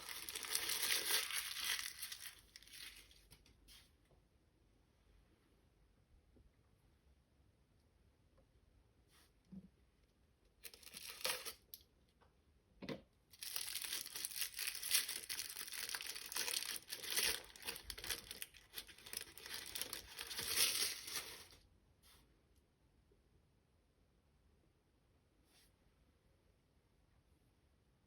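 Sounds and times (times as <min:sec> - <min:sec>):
plastic wrapper crinkling and tearing: 0:00.0 - 0:03.3, 0:10.6 - 0:11.8, 0:13.4 - 0:21.6.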